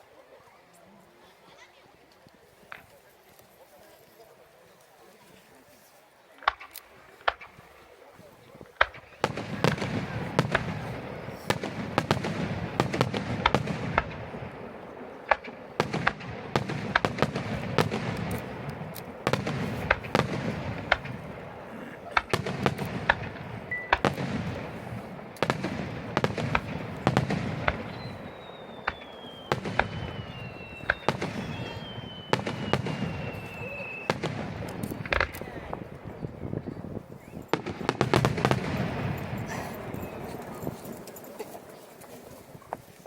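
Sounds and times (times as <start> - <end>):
fireworks bangs and crackles: 6.3 - 43.0
falling firework whistle: 27.8 - 34.3.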